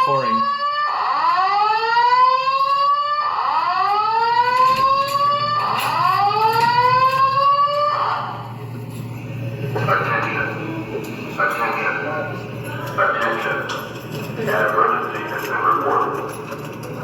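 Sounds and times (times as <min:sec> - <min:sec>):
fire alarm whoop tone: 0:00.0 - 0:08.4.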